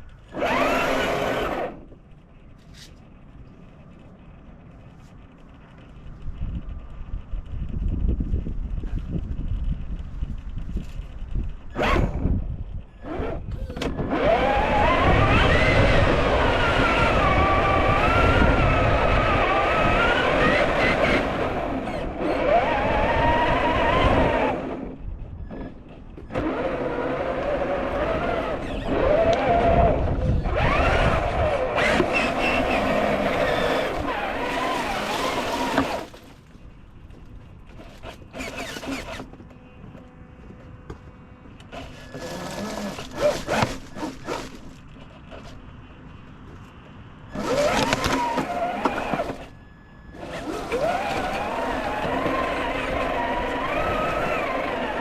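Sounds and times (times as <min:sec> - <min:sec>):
electric motor whining: 0:00.0 - 0:02.0, 0:11.4 - 0:36.3, 0:37.7 - 0:45.6, 0:47.3 - 0:55.0.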